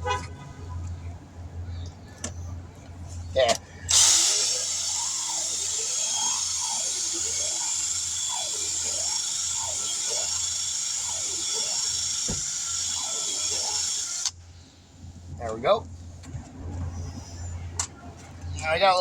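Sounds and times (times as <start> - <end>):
air drill hissing and whining: 3.9 - 14.4.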